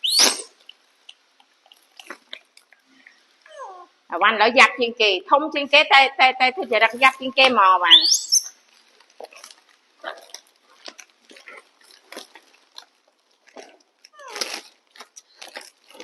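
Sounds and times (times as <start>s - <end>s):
pet crunching treats: 8.7s - 16.0s.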